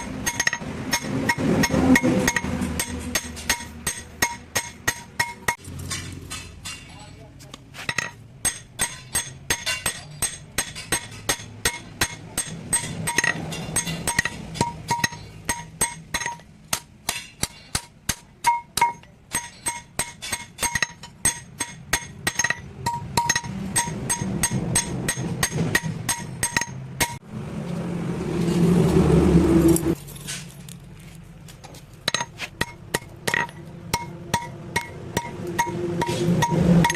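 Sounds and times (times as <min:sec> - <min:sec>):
hammer ringing on anvil: 0:00.0 - 0:06.9, 0:07.9 - 0:27.2, 0:32.1 - 0:36.9
loud rushing noise: 0:27.1 - 0:30.0.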